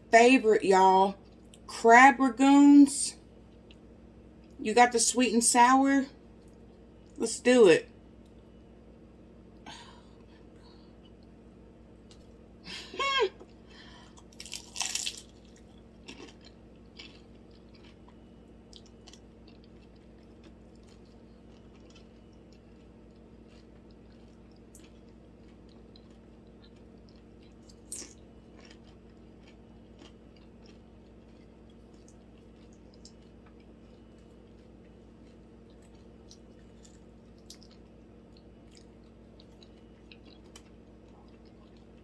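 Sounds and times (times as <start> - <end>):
quiet chewing with small crunches: 1.1 - 1.7, 3.2 - 4.6, 6.1 - 7.2, 7.9 - 12.6, 13.4 - 42.0
loud crunch of biting fried food: 14.1 - 33.7.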